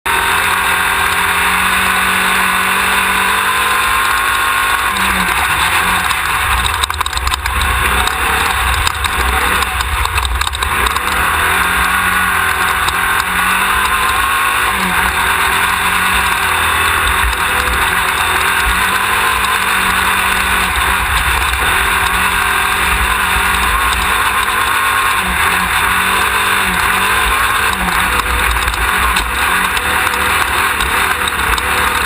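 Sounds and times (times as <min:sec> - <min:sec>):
drivetrain noise: 0:00.0 - 0:32.0
race car engine under load: 0:00.0 - 0:32.0
knocks and rattles: 0:05.3 - 0:11.8.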